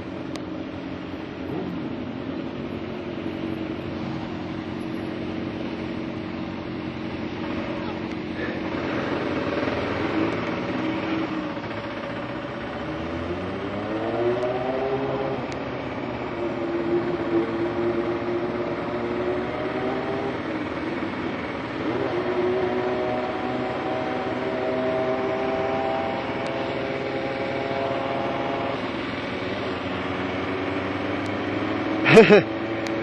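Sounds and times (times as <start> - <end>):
steady rushing noise: 0.0 - 13.6
motorcycle engine accelerating: 0.0 - 33.0.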